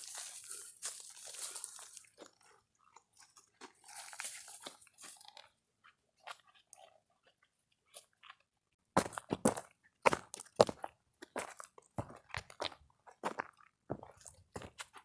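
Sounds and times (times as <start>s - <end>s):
crunching and rustling: 0.0s - 2.6s, 3.2s - 5.4s.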